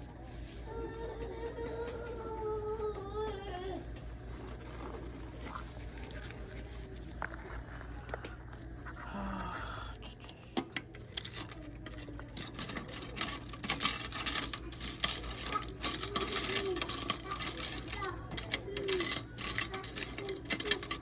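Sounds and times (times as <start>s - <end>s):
coins clinking: 11.0s - 21.0s.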